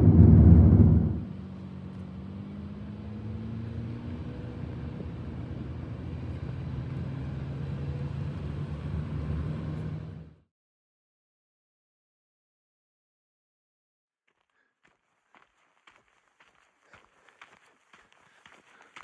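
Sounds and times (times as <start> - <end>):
engine droning: 0.0 - 10.4.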